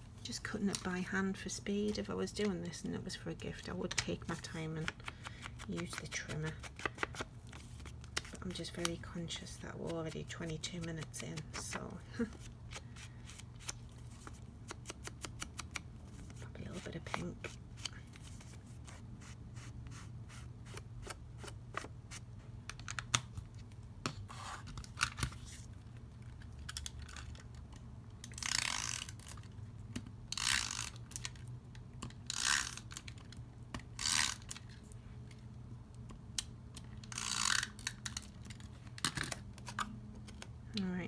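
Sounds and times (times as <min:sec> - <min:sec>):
paper handling clicks and taps: 0:03.4 - 0:12.5.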